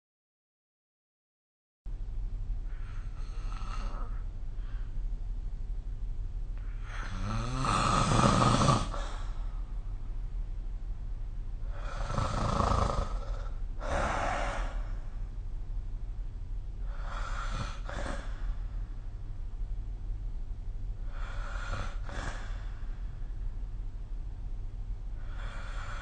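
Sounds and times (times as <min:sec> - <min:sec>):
person snoring: 0:02.7 - 0:04.3, 0:06.7 - 0:09.6, 0:11.6 - 0:15.0, 0:16.8 - 0:18.6, 0:21.0 - 0:22.8, 0:25.2 - 0:26.0.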